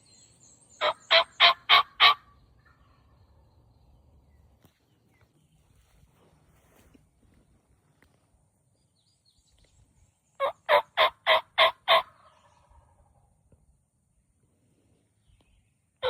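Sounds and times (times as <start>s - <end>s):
wild turkey yelping: 0.8s - 3.0s, 10.4s - 12.9s.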